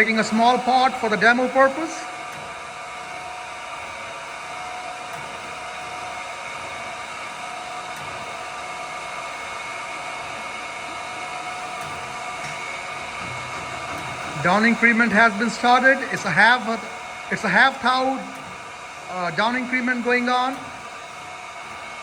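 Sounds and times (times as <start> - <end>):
surface grinder whirring: 0.0 - 22.0.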